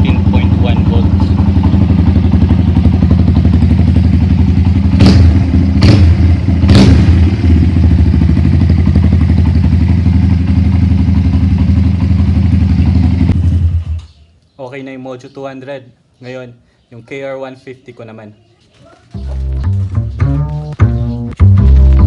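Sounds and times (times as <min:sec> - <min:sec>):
motorcycle engine idling: 0:00.0 - 0:14.0
loud engine bursts: 0:04.9 - 0:07.7.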